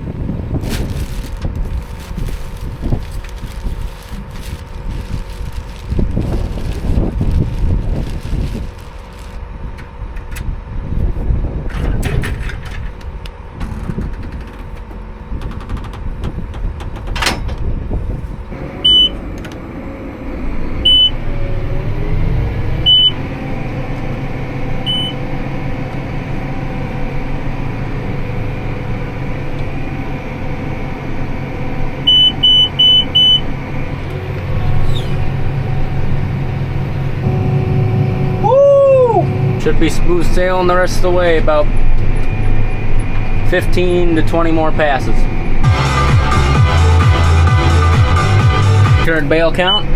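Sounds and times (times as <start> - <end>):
tractor engine running: 0.0 - 38.5.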